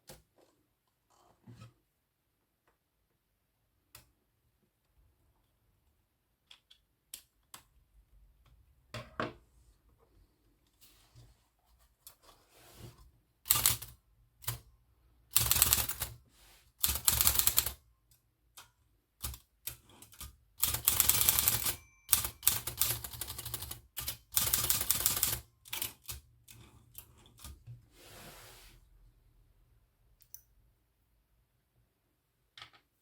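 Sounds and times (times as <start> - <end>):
typewriter clicking: 13.5 - 14.6, 15.3 - 16.1, 16.8 - 17.8, 19.2 - 26.2.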